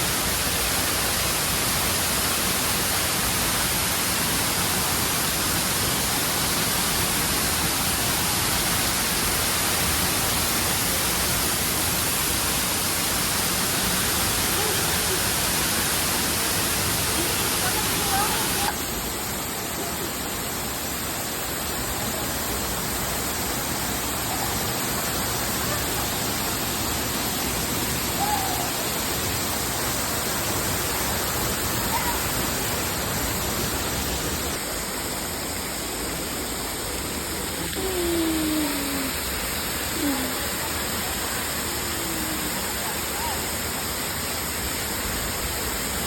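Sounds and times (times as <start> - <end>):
waterfall rushing: 0.0 - 46.0.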